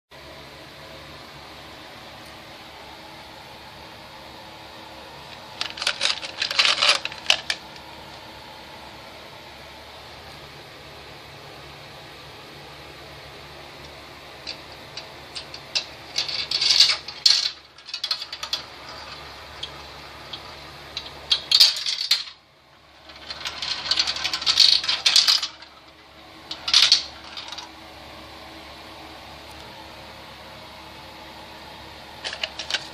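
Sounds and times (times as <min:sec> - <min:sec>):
marbles clattering down track: 0:05.6 - 0:07.6, 0:14.5 - 0:22.4, 0:23.0 - 0:25.8, 0:26.5 - 0:27.7.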